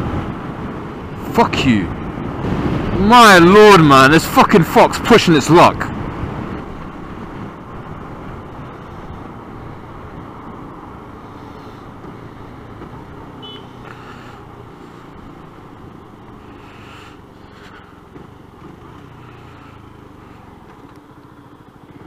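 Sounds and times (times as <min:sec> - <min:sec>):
road noise: 0:00.0 - 0:22.0
motorcycle engine: 0:05.9 - 0:22.0.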